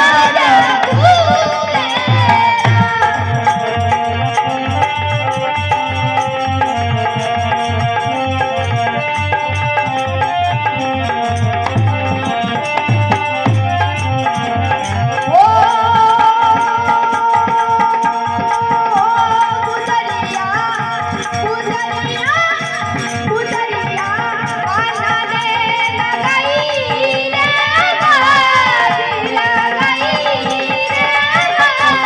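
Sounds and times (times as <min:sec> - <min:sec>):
melodic lead instrument: 0:00.0 - 0:15.8
hand drum rhythm: 0:00.0 - 0:32.0
rattle rhythm: 0:00.2 - 0:27.6.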